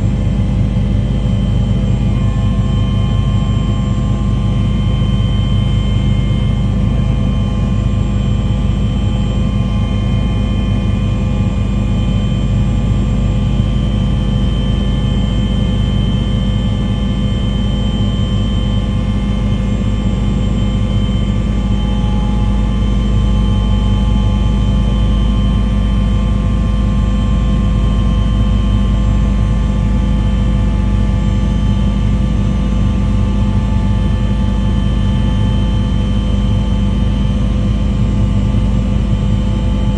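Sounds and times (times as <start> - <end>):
engine running low rumble: 0.0 - 14.1, 19.5 - 27.1.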